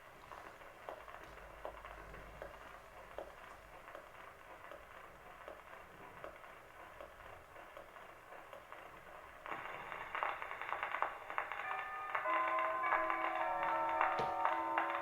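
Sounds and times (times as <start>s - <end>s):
record surface hiss and crackles: 0.0s - 15.0s
old recorded music: 9.4s - 15.0s.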